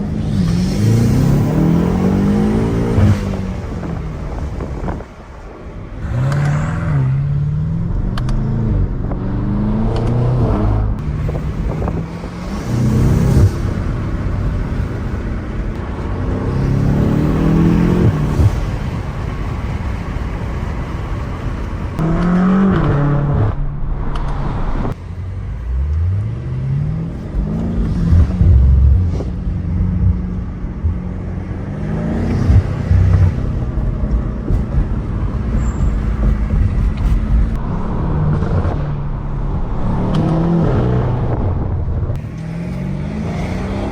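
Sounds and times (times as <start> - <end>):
road and tyre noise: 0.0 - 43.9
car engine accelerating: 6.0 - 15.1, 22.0 - 43.9.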